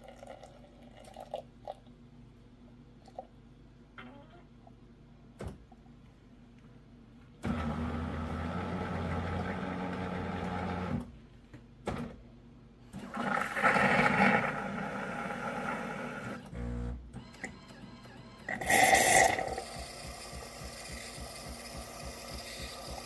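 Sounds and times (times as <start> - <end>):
espresso machine hissing: 18.5 - 23.0
espresso machine hum: 18.5 - 23.0.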